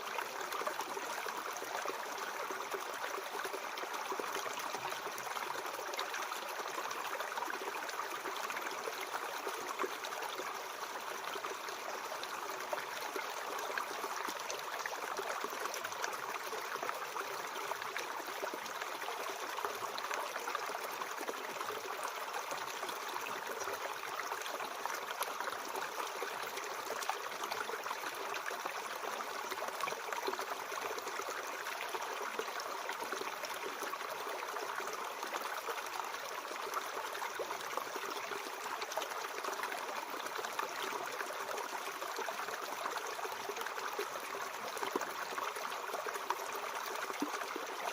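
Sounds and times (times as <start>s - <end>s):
stream flowing: 0.0s - 47.9s.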